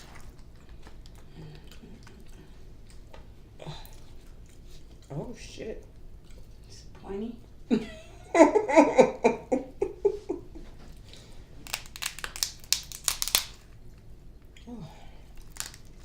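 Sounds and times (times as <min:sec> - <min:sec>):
seafood crackling and crunching: 0:11.6 - 0:14.1, 0:15.3 - 0:16.0.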